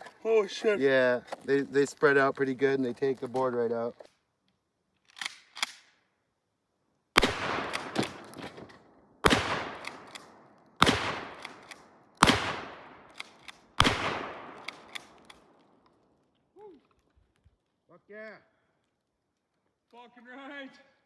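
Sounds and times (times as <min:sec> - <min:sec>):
shotgun blasts with echo: 0:07.2 - 0:08.6, 0:09.2 - 0:15.5.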